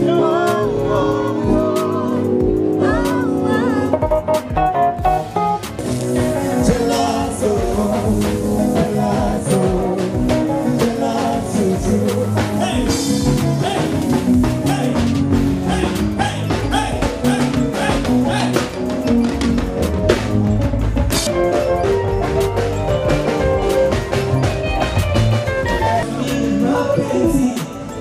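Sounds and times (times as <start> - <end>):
person singing: 0.0 - 4.3, 6.2 - 18.7, 25.6 - 28.0
upbeat music with drum beat: 0.0 - 28.0.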